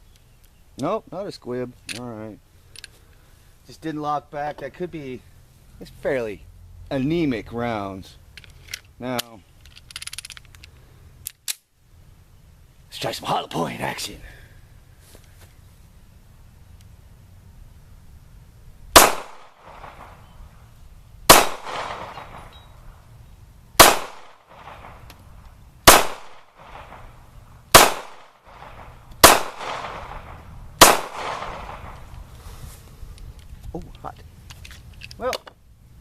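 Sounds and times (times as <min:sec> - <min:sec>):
pistol shots with echo: 0:19.0 - 0:20.2, 0:21.3 - 0:22.6, 0:23.8 - 0:25.0, 0:25.8 - 0:27.1, 0:27.7 - 0:32.0.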